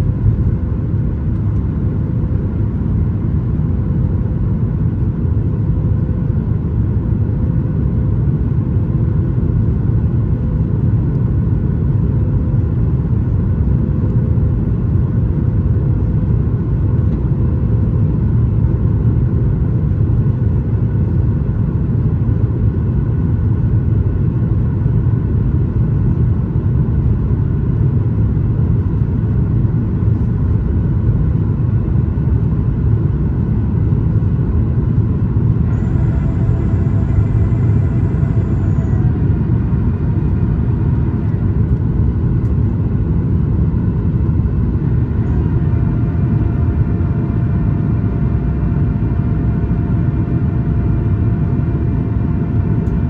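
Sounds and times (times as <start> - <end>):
airplane cabin engine rumble: 0.0 - 53.0
faint steady hum: 27.8 - 53.0.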